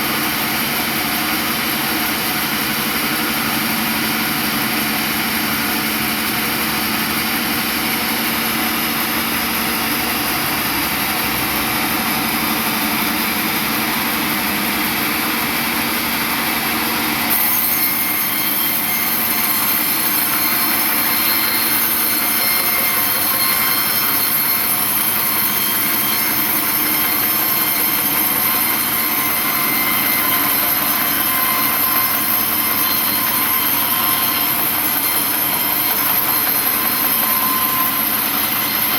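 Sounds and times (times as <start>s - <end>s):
sawmill saw running: 0.0s - 38.9s.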